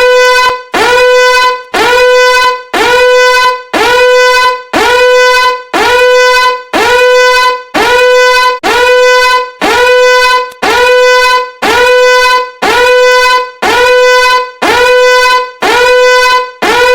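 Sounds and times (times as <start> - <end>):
horn-like alarm tone: 0.0 - 16.9.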